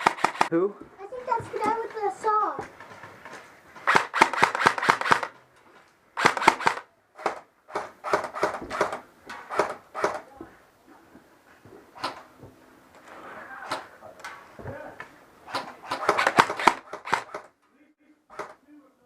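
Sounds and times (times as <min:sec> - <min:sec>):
airsoft guns firing: 0:00.0 - 0:00.5, 0:03.8 - 0:05.4, 0:06.2 - 0:10.3, 0:12.0 - 0:12.3, 0:15.4 - 0:17.6.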